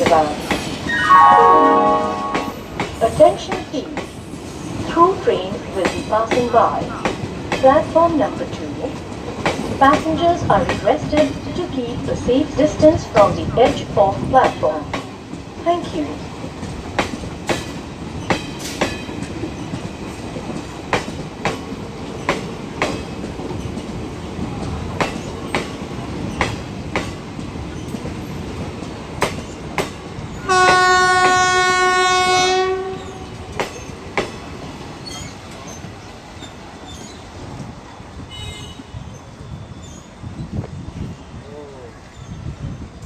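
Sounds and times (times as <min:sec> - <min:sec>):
train horn: 0:00.9 - 0:03.2, 0:30.4 - 0:33.3, 0:38.3 - 0:39.0
train wheels clicking over rail joints: 0:09.0 - 0:13.4, 0:16.5 - 0:31.4, 0:33.0 - 0:37.8.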